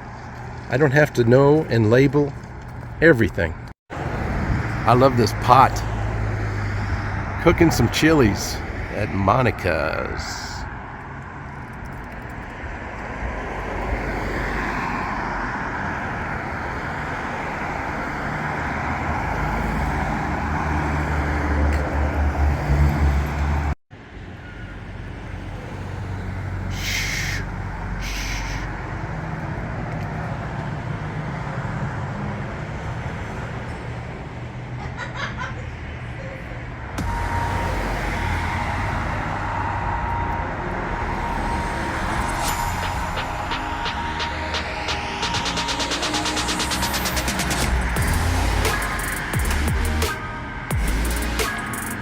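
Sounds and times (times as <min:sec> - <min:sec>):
street traffic: 0:00.0 - 0:52.0
vehicle engine rumble: 0:00.0 - 0:52.0
short hisses: 0:26.7 - 0:28.7.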